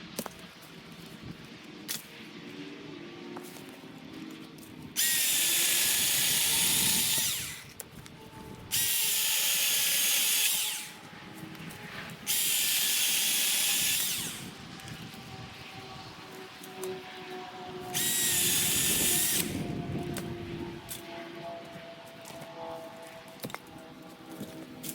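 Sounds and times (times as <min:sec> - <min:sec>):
battery chainsaw whining: 0:05.0 - 0:15.9, 0:17.7 - 0:21.0.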